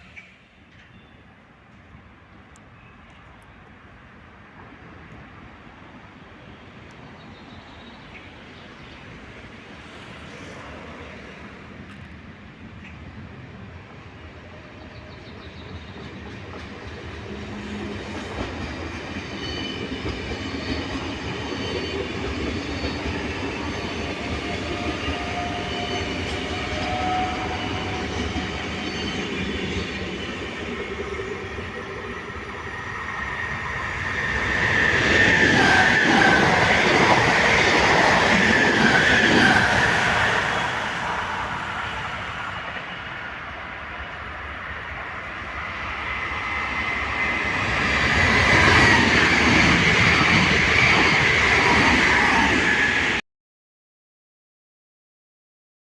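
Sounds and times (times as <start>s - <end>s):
train passing: 0.0s - 53.2s
wheels squealing on rail: 15.0s - 53.2s.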